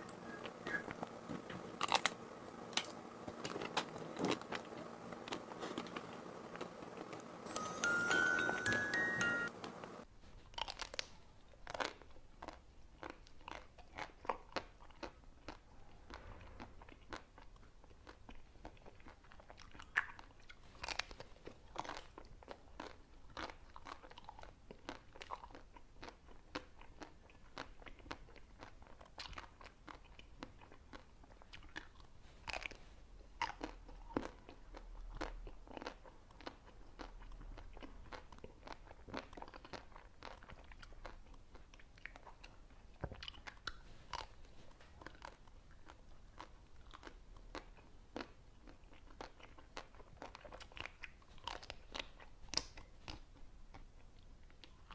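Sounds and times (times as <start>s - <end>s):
ice cream crunching: 0.0s - 7.3s.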